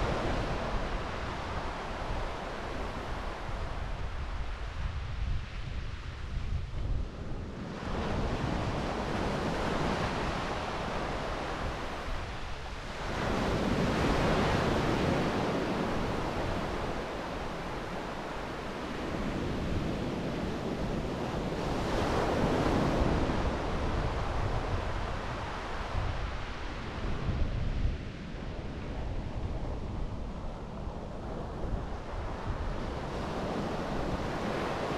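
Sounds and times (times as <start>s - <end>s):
wind rumble on microphone: 0.0s - 34.9s
sea waves breaking on beach: 32.2s - 34.9s.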